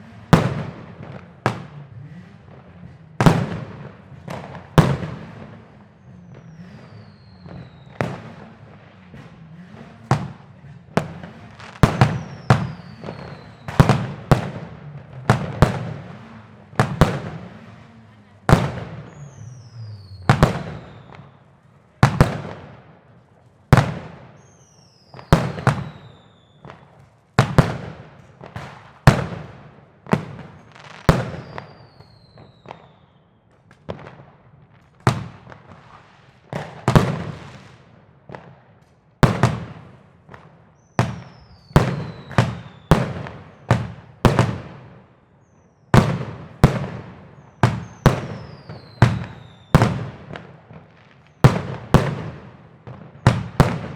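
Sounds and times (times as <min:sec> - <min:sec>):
fireworks bangs: 0:00.0 - 0:53.9
high falling firework whistle: 0:03.4 - 0:14.6, 0:15.4 - 0:21.6, 0:24.3 - 0:27.0, 0:30.6 - 0:33.4, 0:40.8 - 0:44.0, 0:47.3 - 0:49.9.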